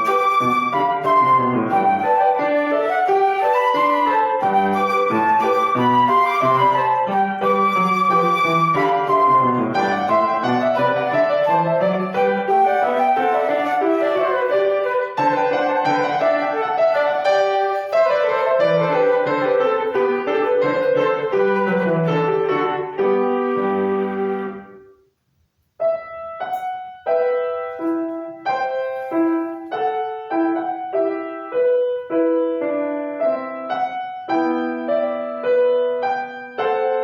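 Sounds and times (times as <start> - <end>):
flute dance melody: 0.0 - 25.0
piano accompaniment: 0.0 - 37.0.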